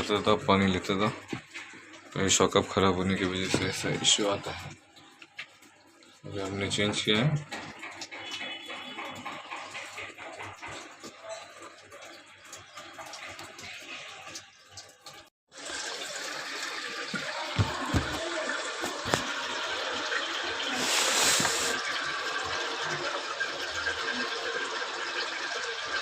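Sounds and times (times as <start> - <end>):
water rushing into washing machine: 0.0 - 26.0.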